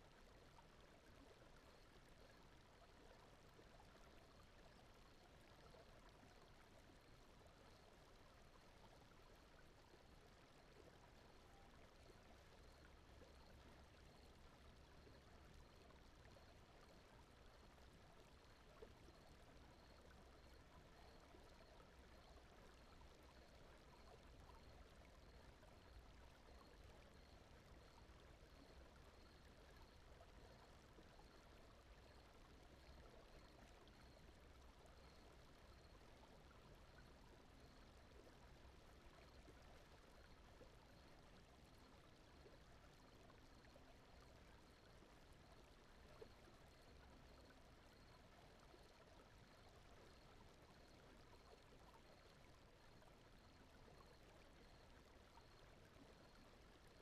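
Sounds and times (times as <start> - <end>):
faint brown noise hiss: 0.0 - 57.0.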